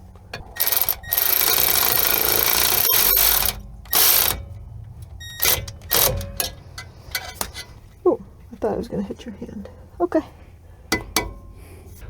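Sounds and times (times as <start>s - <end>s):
socket ratchet clicking: 0.4s - 4.5s, 5.1s - 7.7s.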